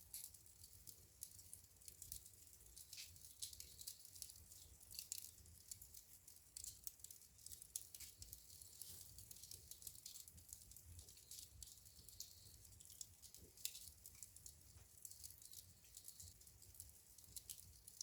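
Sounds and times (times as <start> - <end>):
wood fire crackling: 0.0 - 18.0.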